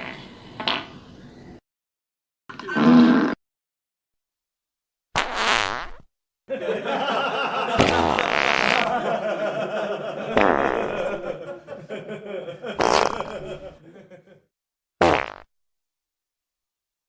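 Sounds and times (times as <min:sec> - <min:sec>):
sputtering fart: 0:00.0 - 0:01.0, 0:02.5 - 0:03.4, 0:05.2 - 0:06.1, 0:07.8 - 0:08.9, 0:10.3 - 0:11.2, 0:12.8 - 0:13.4, 0:15.0 - 0:15.5.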